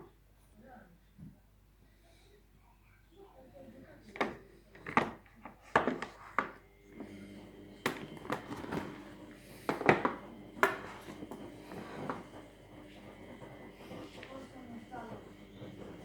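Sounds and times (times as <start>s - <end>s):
hard objects knocking and clattering: 7.8s - 14.5s.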